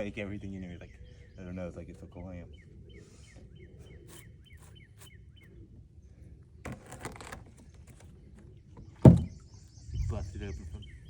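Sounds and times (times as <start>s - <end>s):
bird chirping: 0.0s - 5.7s, 7.6s - 11.0s
rustling or scraping: 6.6s - 8.2s.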